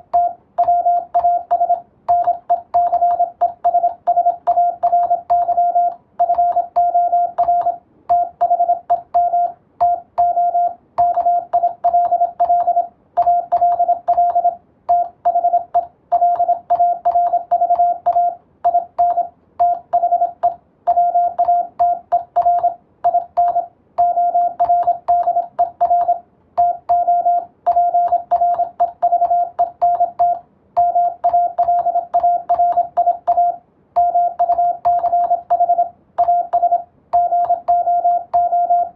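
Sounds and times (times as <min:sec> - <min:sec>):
morse code beeps: 0:00.0 - 0:38.9
telegraph key clicks: 0:11.0 - 0:38.9.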